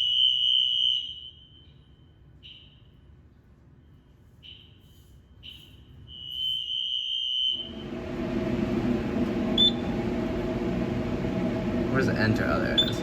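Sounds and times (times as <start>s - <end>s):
fire alarm horn blasts: 0.0s - 3.2s, 3.8s - 8.0s, 9.5s - 10.1s
loud steady noise: 7.6s - 13.0s.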